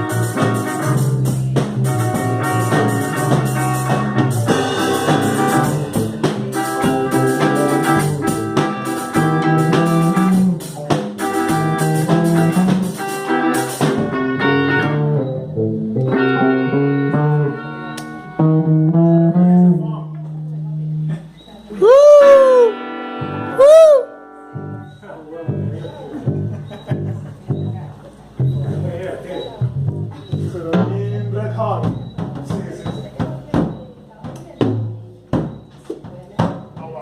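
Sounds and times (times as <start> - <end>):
drum kit: 0.0 - 19.8, 21.0 - 37.0
instrumental rock band: 0.0 - 37.0.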